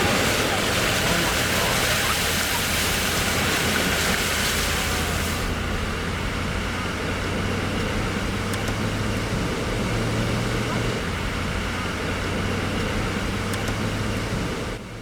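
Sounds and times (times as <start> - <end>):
rain and water spray hiss: 0.0 - 5.6
low engine and road hum: 0.0 - 15.0.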